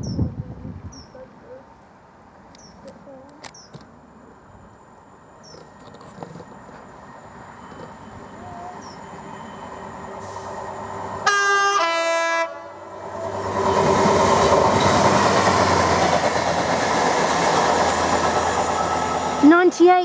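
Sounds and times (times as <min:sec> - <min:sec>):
train rumble: 0:04.0 - 0:20.0
train wheels on rails: 0:04.6 - 0:11.8, 0:12.8 - 0:20.0
two-tone train horn: 0:11.2 - 0:12.9.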